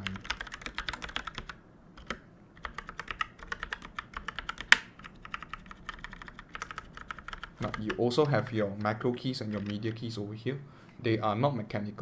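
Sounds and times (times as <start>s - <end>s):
mechanical keyboard typing: 0.0s - 10.0s.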